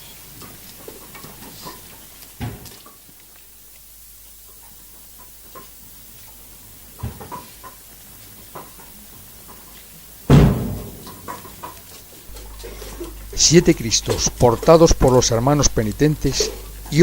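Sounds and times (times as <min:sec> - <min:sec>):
loud dull thump: 0:10.3 - 0:11.3.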